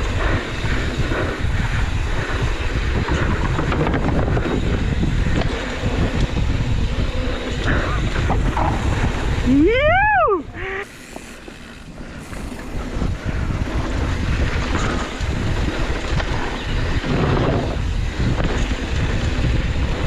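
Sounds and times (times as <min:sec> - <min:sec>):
wind rushing over microphone: 0:00.0 - 0:20.0
rising and falling whoop: 0:09.5 - 0:10.9
bike tyres rolling over dirt: 0:10.6 - 0:19.9.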